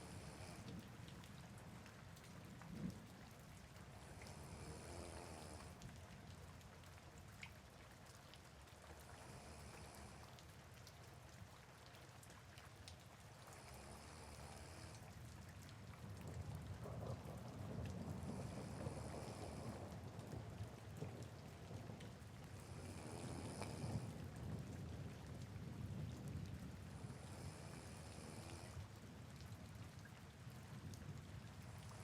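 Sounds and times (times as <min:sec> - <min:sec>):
soft rain falling: 0:00.0 - 0:32.0
person snoring: 0:04.3 - 0:05.8, 0:22.8 - 0:24.1.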